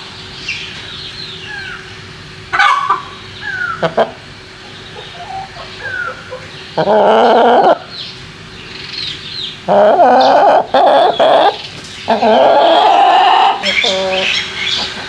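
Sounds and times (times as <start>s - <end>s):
hens calling loudly: 2.5s - 7.9s, 9.5s - 15.0s.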